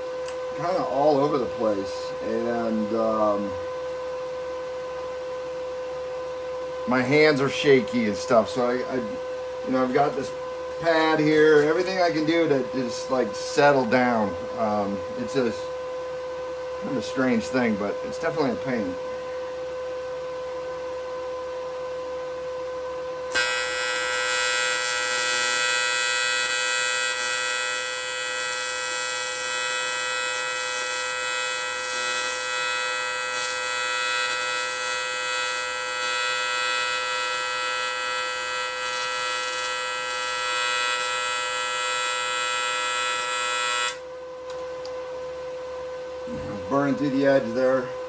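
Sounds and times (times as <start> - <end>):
electrical hum: 0.0 - 48.0
welding arc buzzing: 23.3 - 44.1.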